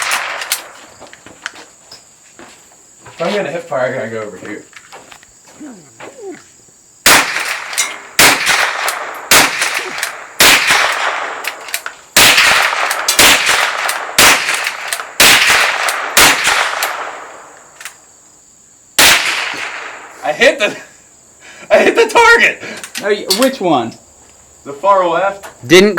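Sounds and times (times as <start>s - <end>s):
gunshots with long echo: 0.0s - 0.8s, 7.0s - 17.6s, 19.0s - 20.2s.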